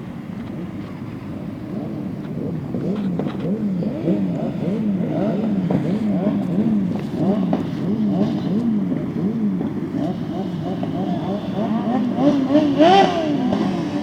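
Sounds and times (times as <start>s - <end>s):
motorcycle engines revving: 0.4s - 14.0s.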